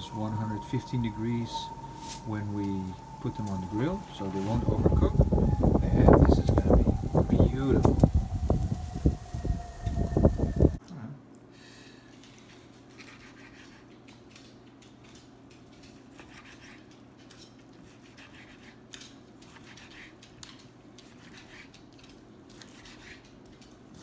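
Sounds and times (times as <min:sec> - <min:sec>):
loud outdoor noise: 0:00.0 - 0:10.8
low room hum: 0:00.0 - 0:17.9.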